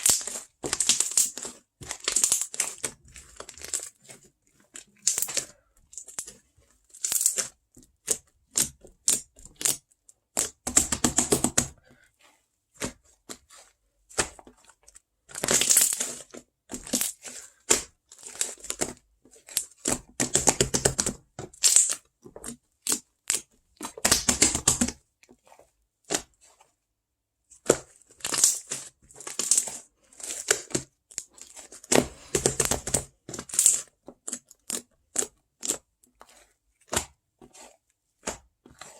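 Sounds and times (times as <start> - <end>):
crinkling and tearing material: 0.0 - 11.7, 27.5 - 38.9.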